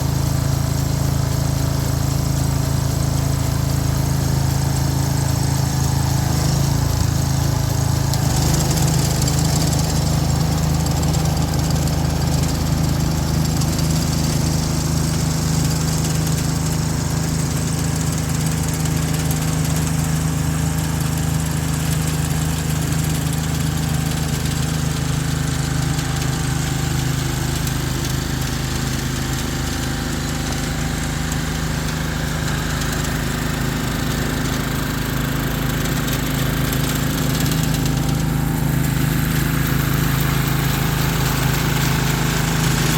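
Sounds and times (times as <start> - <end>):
small engine running: 0.0 - 42.9.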